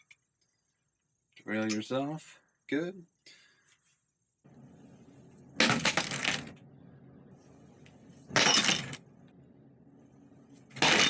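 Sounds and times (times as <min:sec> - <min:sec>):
steady low hum: 0:04.5 - 0:11.0
metallic clattering of tools: 0:08.3 - 0:09.0, 0:10.7 - 0:11.0.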